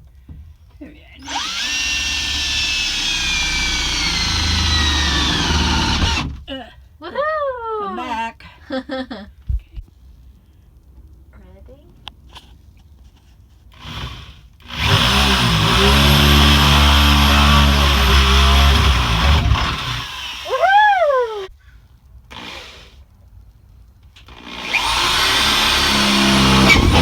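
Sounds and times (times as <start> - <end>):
electric drill boring sheet metal: 1.2 - 6.4, 13.8 - 20.6, 24.3 - 27.0
person cheering woohoo: 20.5 - 21.5.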